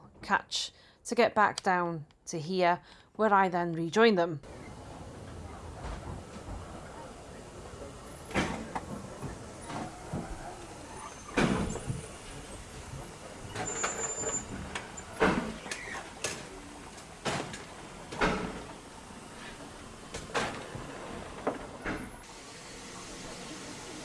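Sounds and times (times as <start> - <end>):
steam train rumble: 4.4 - 24.0
steam train thumps: 4.5 - 22.3
steam hissing bursts: 4.5 - 24.0.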